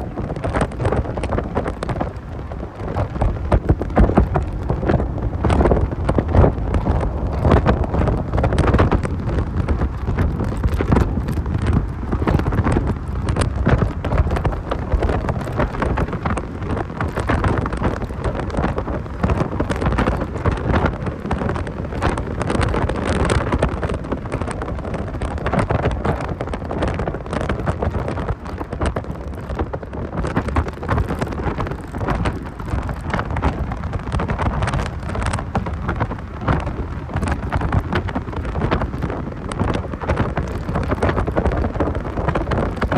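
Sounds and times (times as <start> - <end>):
car driving noise: 0.0 - 42.9
wind buffeting microphone: 0.0 - 42.9.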